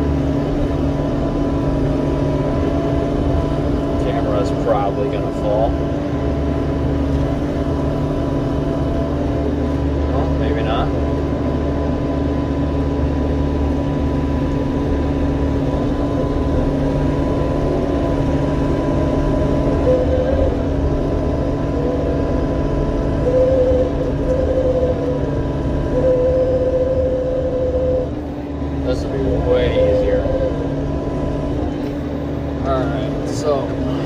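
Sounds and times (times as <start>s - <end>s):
excavator diesel engine running: 0.0s - 34.0s
hydraulic whine: 0.0s - 34.0s.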